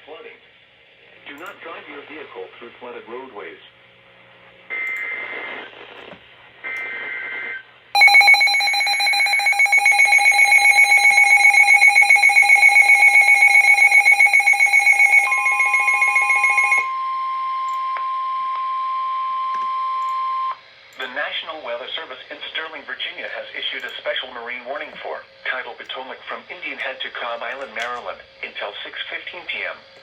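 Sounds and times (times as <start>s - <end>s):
steady alarm tone: 8.0s - 20.6s
two-tone attention signal: 8.0s - 20.6s.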